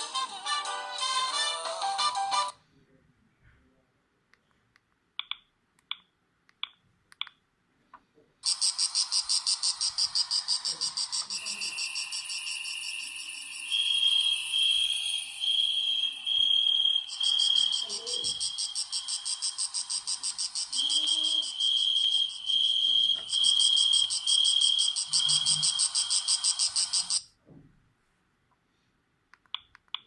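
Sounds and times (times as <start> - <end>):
insect chirping ringtone: 8.4 - 27.2.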